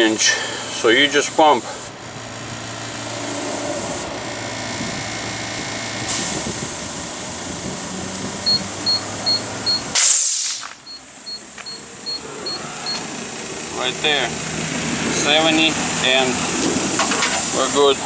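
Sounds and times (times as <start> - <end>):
loud hiss of escaping air: 0.0 - 2.0, 2.9 - 4.1, 6.1 - 18.0
tire inflator machine hum: 0.0 - 18.0
short high beeps: 8.4 - 9.9, 10.8 - 13.1.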